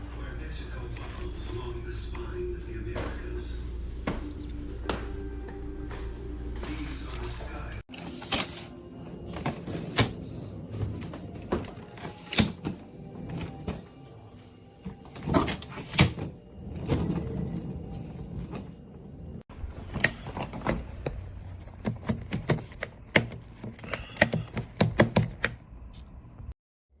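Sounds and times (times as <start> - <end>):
suitcases knocking and clicking: 8.2 - 14.1, 14.8 - 18.8, 19.5 - 25.6.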